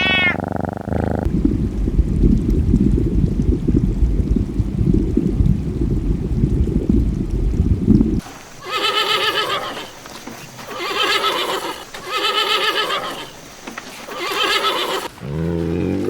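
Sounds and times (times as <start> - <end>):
farm animal calling: 0.0 - 1.3, 8.6 - 10.0, 10.6 - 13.4, 14.0 - 16.0.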